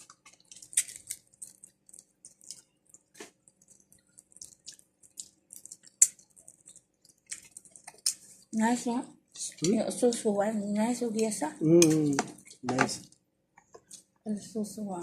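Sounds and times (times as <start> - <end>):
wet eating smacks and clicks: 0.0 - 8.5.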